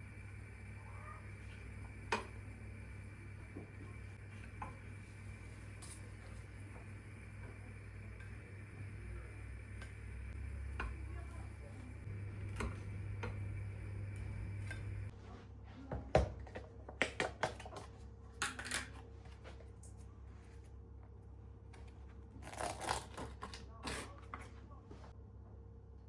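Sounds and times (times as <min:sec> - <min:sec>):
low steady hum: 0:00.0 - 0:15.2.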